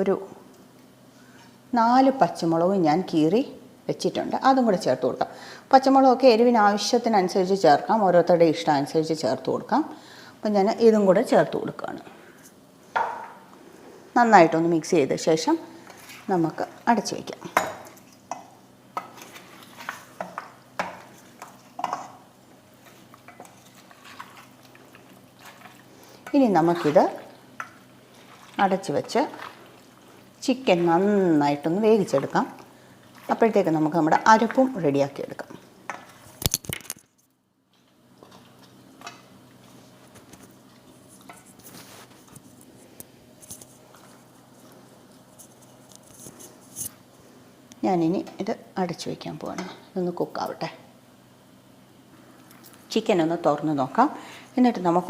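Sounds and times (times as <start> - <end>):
low steady hum: 0.0 - 55.0
spoon stirring in a pot: 15.8 - 36.4, 37.8 - 42.7.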